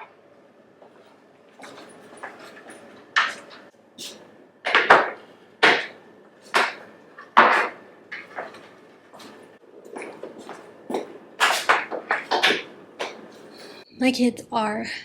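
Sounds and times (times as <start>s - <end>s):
sharp knocks on hard objects: 4.7s - 9.4s.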